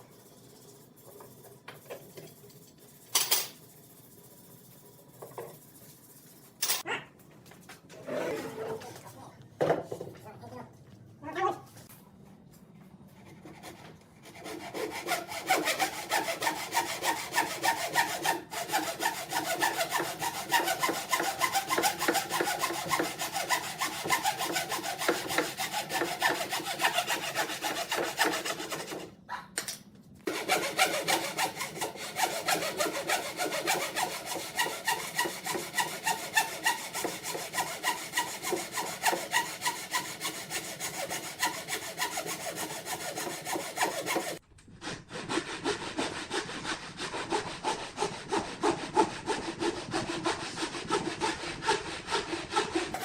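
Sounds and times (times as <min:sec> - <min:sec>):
hand saw cutting wood: 0:13.2 - 0:29.2, 0:30.3 - 0:53.0.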